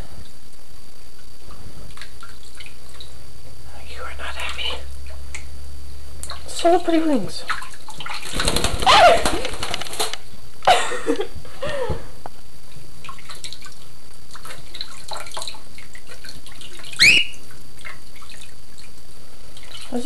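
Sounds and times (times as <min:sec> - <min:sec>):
bath water splashing: 0:07.4 - 0:10.1, 0:13.0 - 0:20.0
running water: 0:13.0 - 0:20.0
cockatiel calling: 0:17.0 - 0:17.4.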